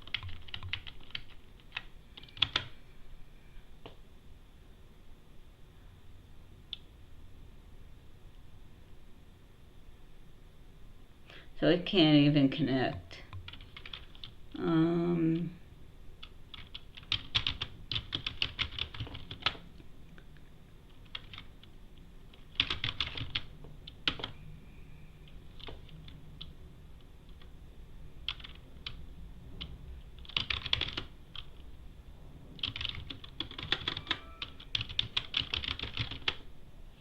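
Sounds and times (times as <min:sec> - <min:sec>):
typing on a computer keyboard: 0:00.0 - 0:02.7, 0:13.3 - 0:14.4, 0:16.2 - 0:19.6, 0:20.9 - 0:21.7, 0:22.3 - 0:24.4, 0:25.5 - 0:27.5, 0:28.2 - 0:29.0, 0:29.6 - 0:31.6, 0:32.6 - 0:36.4.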